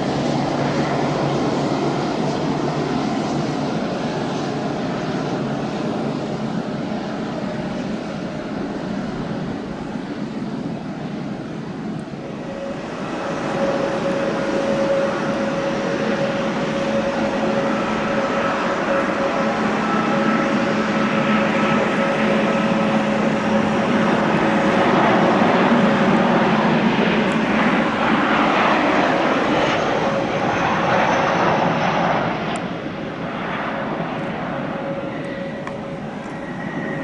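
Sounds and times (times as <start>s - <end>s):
jet airliner engine: 0.0s - 37.0s.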